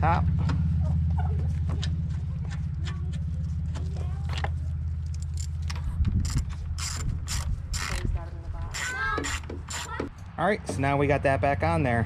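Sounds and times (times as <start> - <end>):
car engine idling: 0.0 - 10.9
metallic clicks of bolts tightened: 5.1 - 8.1.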